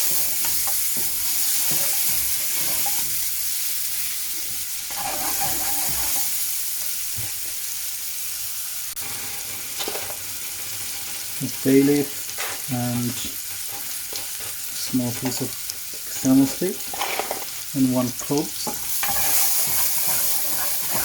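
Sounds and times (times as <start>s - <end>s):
spoon knocking and scraping pan: 0.0s - 3.2s, 4.4s - 6.4s, 13.4s - 14.6s, 18.2s - 21.0s
onion and garlic sizzling in oil: 0.0s - 21.0s.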